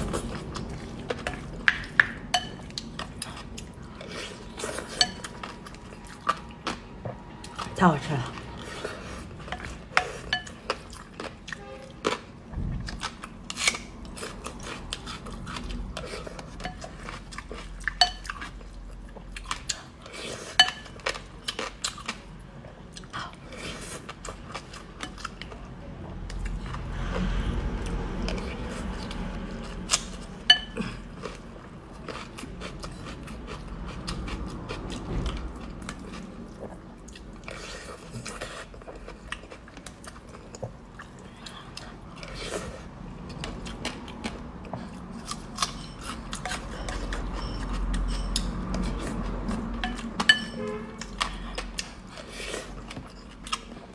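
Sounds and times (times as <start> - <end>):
chewing: 0.0 - 53.9
utensils clinking against dish: 45.6 - 49.0, 49.8 - 51.6.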